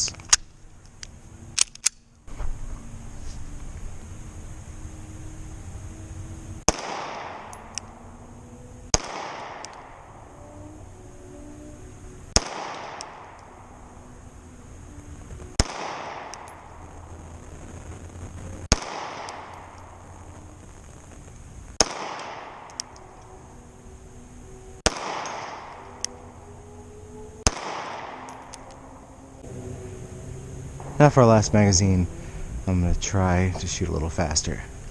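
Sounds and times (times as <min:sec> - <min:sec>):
pistol shots: 0:06.7 - 0:07.8, 0:08.9 - 0:10.1, 0:12.3 - 0:13.5, 0:15.6 - 0:16.6, 0:18.7 - 0:19.8, 0:21.8 - 0:23.0, 0:24.8 - 0:25.9, 0:27.4 - 0:28.6.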